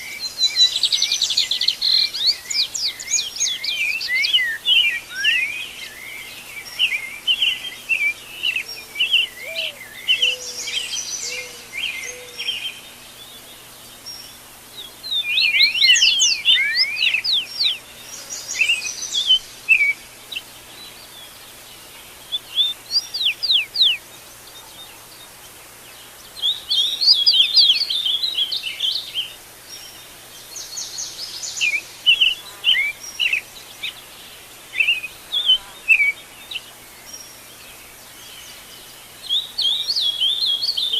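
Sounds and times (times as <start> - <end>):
birds chirping and whistling: 0.0 - 21.3, 22.3 - 24.1, 26.4 - 30.0, 38.2 - 40.9.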